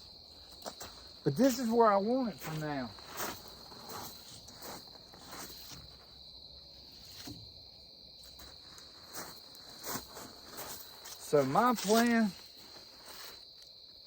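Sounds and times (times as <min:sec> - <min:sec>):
crickets chirring: 0:00.0 - 0:14.0
faint scuffs: 0:02.4 - 0:06.2, 0:08.2 - 0:13.4.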